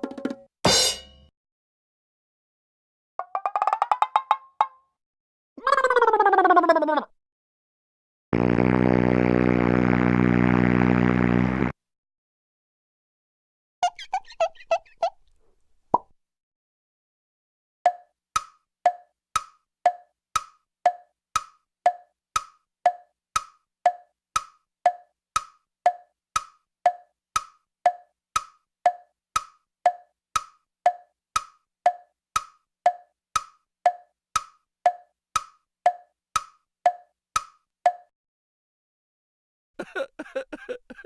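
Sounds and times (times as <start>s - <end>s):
wooden tick-tock clicks: 17.9s - 38.1s.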